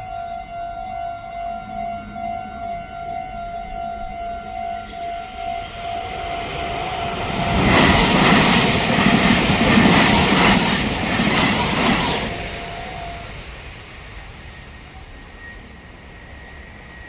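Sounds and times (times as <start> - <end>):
level crossing warning bell: 0.0 - 7.5
train passing at speed: 0.0 - 17.0
wheels clattering on rails: 6.2 - 13.6.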